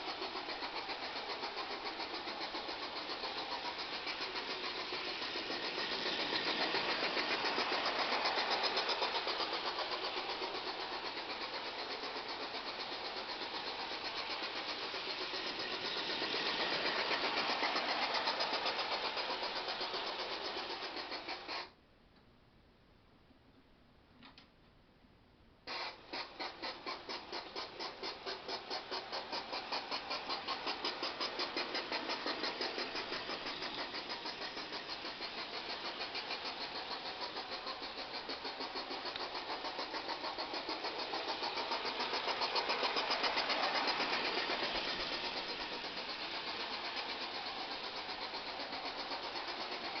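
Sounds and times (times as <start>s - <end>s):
model steam locomotive chuffing: 0.0s - 21.8s, 25.7s - 50.0s
faint click: 24.2s - 24.6s.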